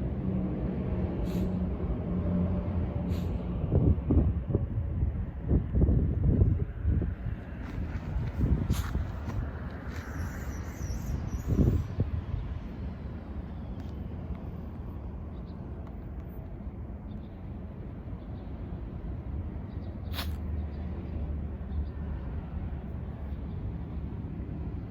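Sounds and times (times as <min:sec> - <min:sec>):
steady low rumble: 0:00.0 - 0:24.9
dog sneezing: 0:20.1 - 0:20.4.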